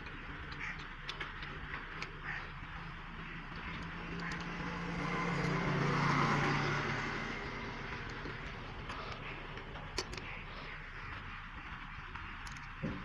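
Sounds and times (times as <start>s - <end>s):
vehicle engine passing by: 2.2s - 12.1s.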